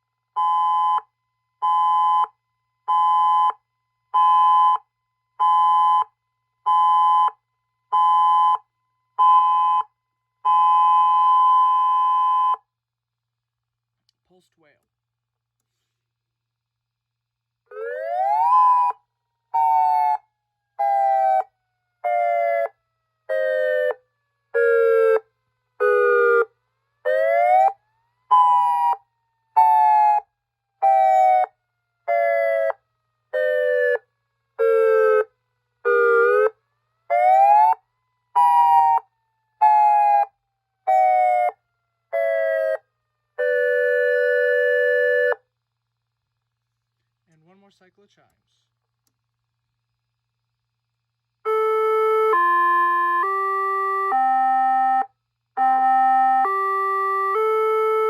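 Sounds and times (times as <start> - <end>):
pulsed two-tone electronic siren: 0.3 - 3.6, 4.2 - 12.7, 17.7 - 45.4, 51.4 - 58.0.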